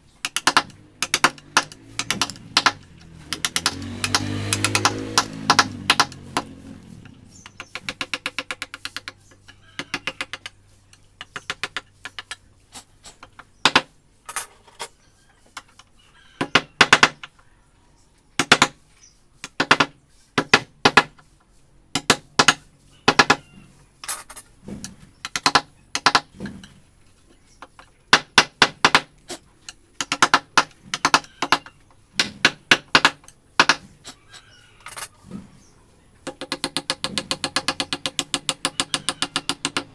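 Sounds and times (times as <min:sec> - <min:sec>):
mallet striking chisel into wood: 0:00.2 - 0:06.6, 0:28.1 - 0:29.1, 0:30.0 - 0:33.8, 0:36.3 - 0:39.9.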